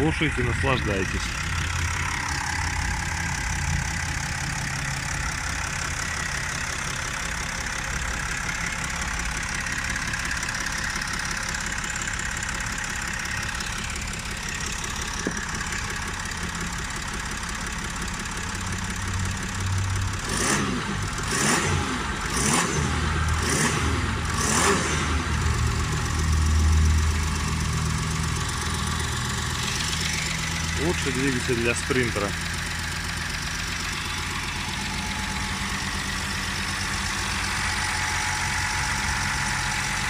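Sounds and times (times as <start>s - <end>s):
diesel engine idling: 0.0s - 40.0s
engine revving surges: 20.2s - 25.6s.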